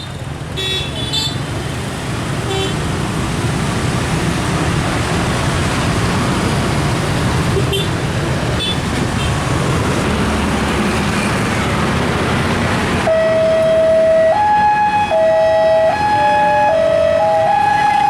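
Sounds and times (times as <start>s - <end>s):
road traffic noise: 0.0s - 18.0s
level crossing warning alarm: 13.1s - 18.0s.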